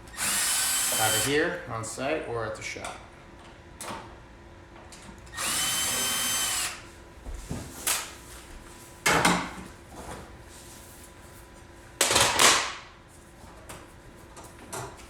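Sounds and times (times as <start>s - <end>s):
cordless drill running: 0.1s - 1.5s, 5.3s - 6.8s.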